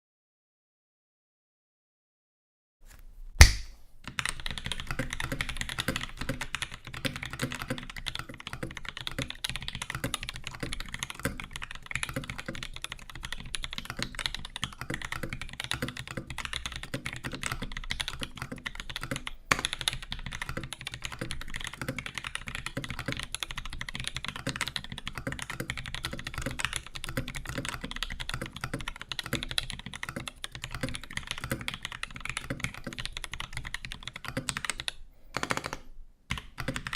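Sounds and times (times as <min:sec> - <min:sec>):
sharp knock: 0:03.4 - 0:03.8
mechanical keyboard typing: 0:04.1 - 0:36.9.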